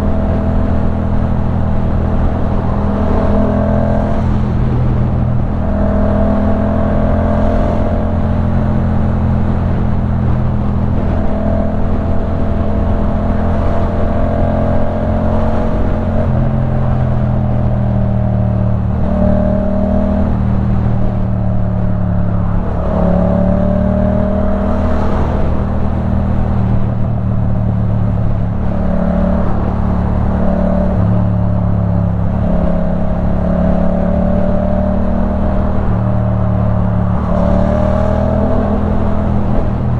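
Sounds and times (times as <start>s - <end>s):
motorcycle engine revving: 22.1s - 39.9s.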